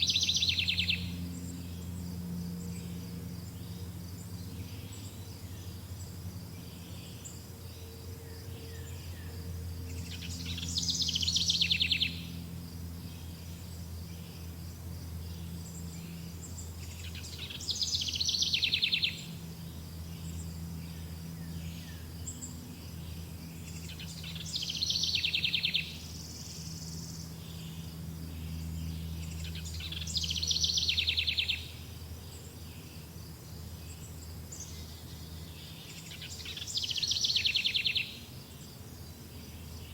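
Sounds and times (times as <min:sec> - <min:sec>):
songbird trilling: 0:00.0 - 0:01.9, 0:09.9 - 0:12.4, 0:15.9 - 0:19.4, 0:23.6 - 0:27.8, 0:28.4 - 0:33.0, 0:33.9 - 0:38.3
insect drone: 0:00.0 - 0:39.9
low steady hum: 0:00.0 - 0:39.9.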